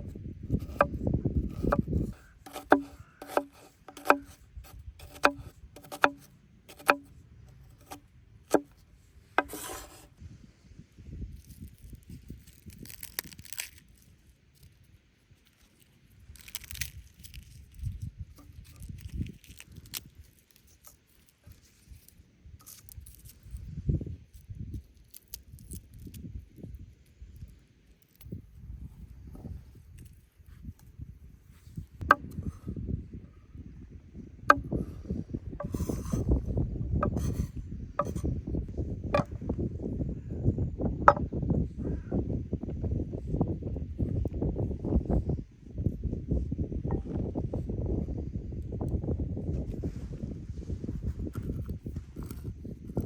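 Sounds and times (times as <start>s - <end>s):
knife chopping on wooden board: 0.6s - 7.1s, 7.8s - 8.7s, 9.4s - 10.0s, 37.0s - 38.2s
rustling and handling: 1.5s - 10.1s, 11.4s - 23.7s
short scrape: 9.4s - 10.1s, 35.6s - 36.4s, 37.0s - 38.3s.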